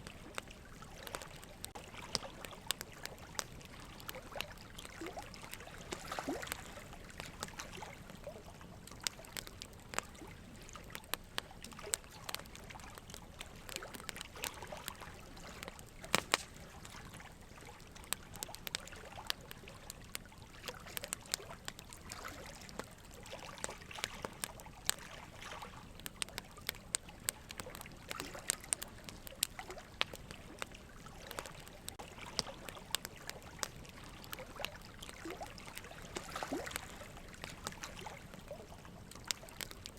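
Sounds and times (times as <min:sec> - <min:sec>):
faint steady hiss: 0:00.0 - 0:39.9
soft crackles and clicks: 0:00.0 - 0:39.9.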